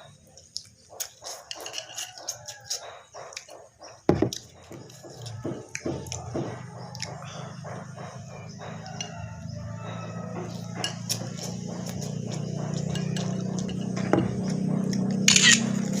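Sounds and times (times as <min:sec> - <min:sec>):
steady low hum: 0:00.0 - 0:16.0
cutlery clinking against a bowl: 0:01.0 - 0:03.5, 0:08.8 - 0:09.5, 0:10.8 - 0:14.5.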